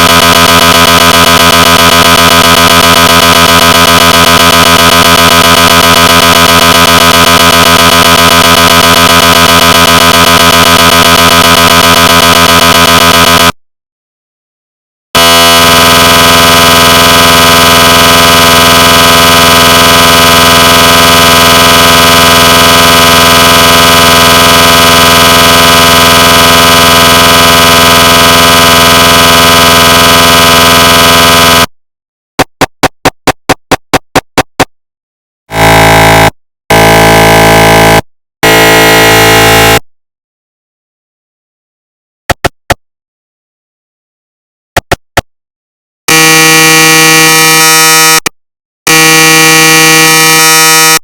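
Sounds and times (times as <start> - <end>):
loud buzzing scanner tone: 0.0 - 13.6, 15.2 - 31.7, 35.5 - 39.8, 46.1 - 48.2, 48.9 - 51.0
short scanner pulses: 0.0 - 13.6, 15.2 - 31.7, 46.1 - 48.3, 48.9 - 51.0.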